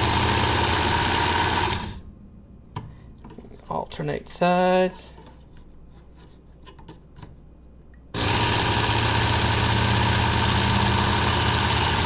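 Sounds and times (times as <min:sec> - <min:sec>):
belt sharpener running: 0:00.0 - 0:02.0, 0:08.2 - 0:12.0.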